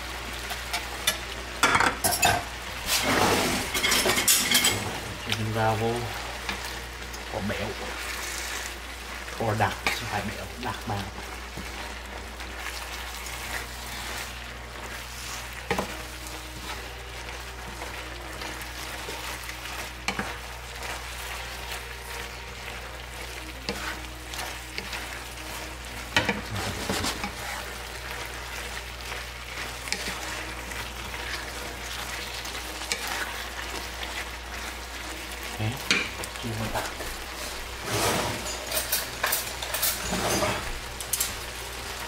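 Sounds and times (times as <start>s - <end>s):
stir-fry sizzling in a pan: 0.0s - 42.0s.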